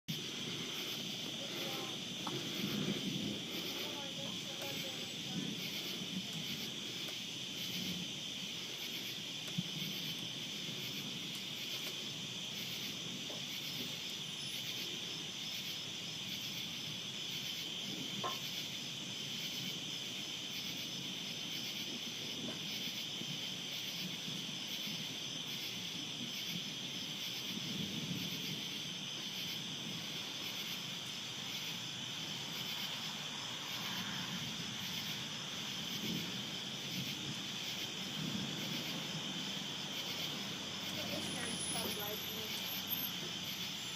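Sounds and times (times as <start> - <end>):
insects trilling at night: 0.1 - 43.9.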